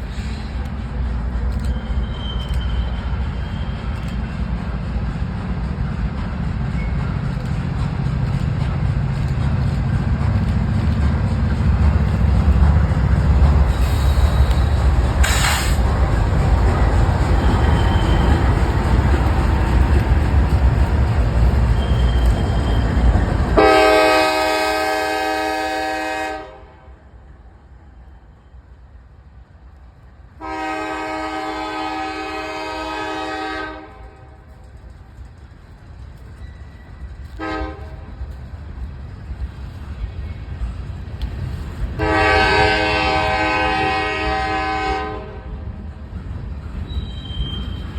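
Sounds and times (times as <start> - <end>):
freight train rumbling past: 0.0 - 47.9
locomotive air horn blasts: 23.6 - 27.0, 30.4 - 34.3, 37.4 - 38.0, 42.0 - 45.5.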